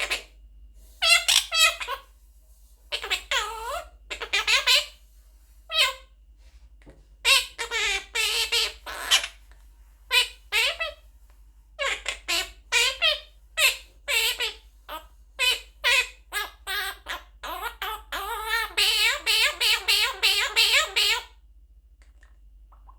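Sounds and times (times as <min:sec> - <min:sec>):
parrot talking: 0:00.0 - 0:00.3, 0:01.0 - 0:02.1, 0:02.9 - 0:05.0, 0:05.7 - 0:06.1, 0:07.2 - 0:09.4, 0:10.1 - 0:11.0, 0:11.8 - 0:21.4.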